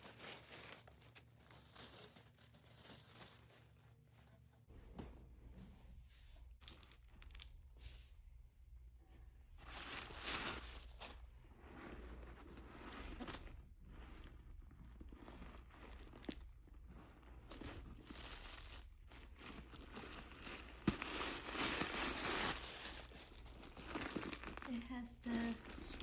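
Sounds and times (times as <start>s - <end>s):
packaging crinkling and tearing: 0.0s - 4.0s, 6.6s - 7.5s, 15.0s - 16.7s, 17.5s - 26.0s.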